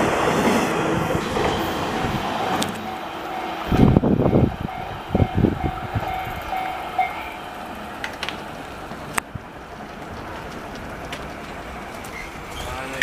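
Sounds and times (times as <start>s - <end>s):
train running noise: 0.0s - 13.0s
train wheels clacking: 0.0s - 13.0s
crossing warning tone: 1.2s - 8.1s.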